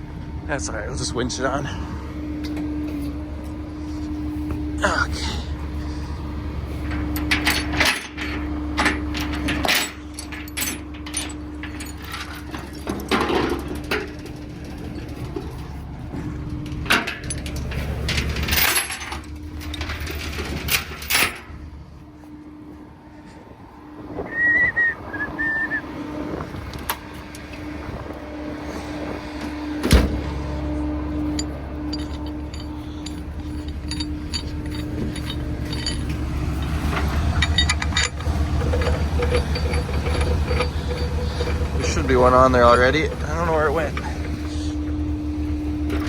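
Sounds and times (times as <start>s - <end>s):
engine running: 0.0s - 46.0s
metal chain clanking and rattling: 4.9s - 21.7s, 31.1s - 46.0s.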